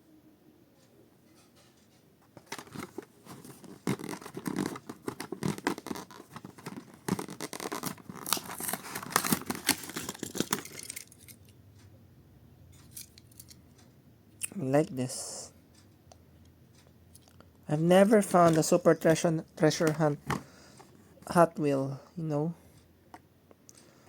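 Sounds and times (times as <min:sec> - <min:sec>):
plastic crinkling: 0:02.4 - 0:11.4
cardboard tearing: 0:02.6 - 0:10.8.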